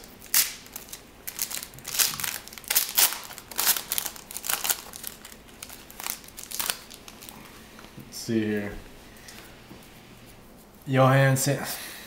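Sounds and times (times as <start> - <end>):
card pack wrapper crinkling: 0.0 - 7.9.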